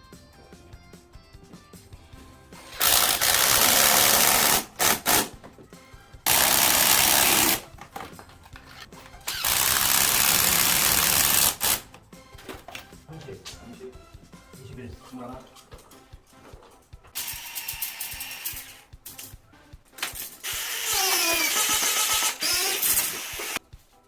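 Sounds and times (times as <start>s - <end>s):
background music: 0.0s - 24.0s
hammer drill running: 2.6s - 5.3s, 6.3s - 7.6s, 9.3s - 11.8s, 17.2s - 18.8s, 20.4s - 23.6s.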